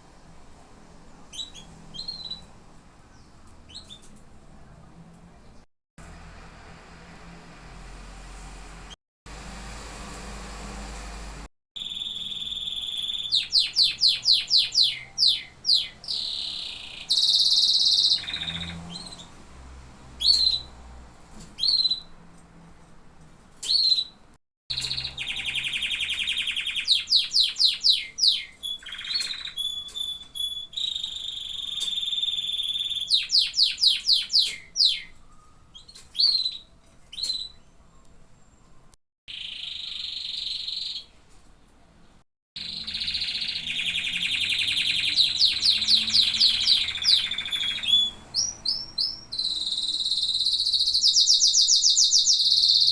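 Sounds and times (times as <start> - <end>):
canary singing: 1.3 - 2.5, 11.8 - 19.4, 20.2 - 20.8, 21.6 - 22.2, 23.6 - 38.7, 39.3 - 41.1, 42.6 - 52.9.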